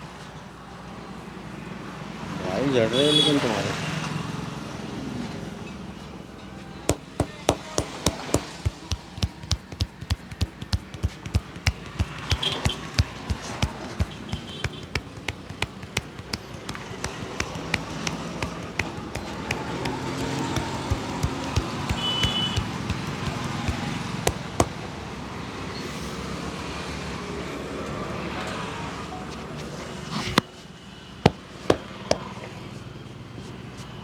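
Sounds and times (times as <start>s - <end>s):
hand slaps on a head: 6.9s - 24.8s.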